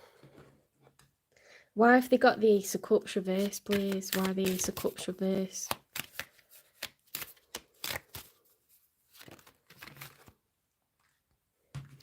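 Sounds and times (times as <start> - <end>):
cards snapping and rustling: 3.4 - 5.0, 5.7 - 8.4, 9.1 - 10.4
soft card handling: 3.4 - 10.4.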